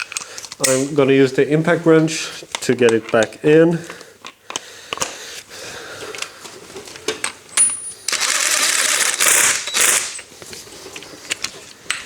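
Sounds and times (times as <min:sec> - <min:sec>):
impact wrench hammering: 0:07.6 - 0:10.2.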